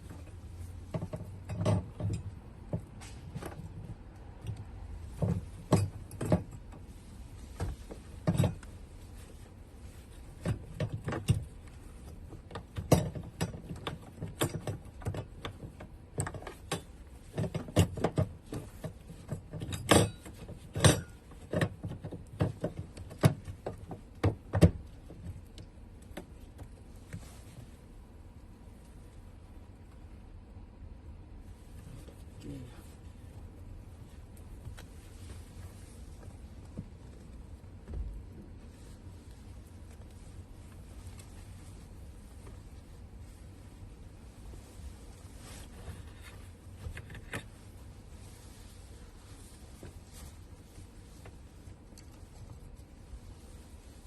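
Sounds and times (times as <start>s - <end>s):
fuel pump clicks and knocks: 0.8s - 6.8s, 10.4s - 26.8s.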